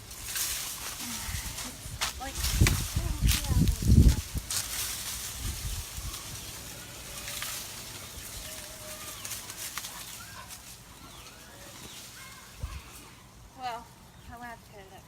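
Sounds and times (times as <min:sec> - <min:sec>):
outdoor background hiss: 0:00.0 - 0:15.0
faint chirping calls: 0:06.0 - 0:14.5.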